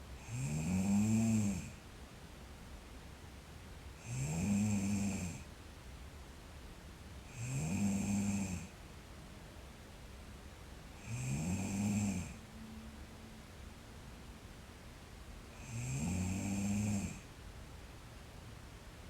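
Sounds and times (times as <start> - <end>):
girl snoring: 0.2 - 1.8, 4.0 - 5.4, 7.3 - 8.7, 11.0 - 12.4, 15.6 - 17.2.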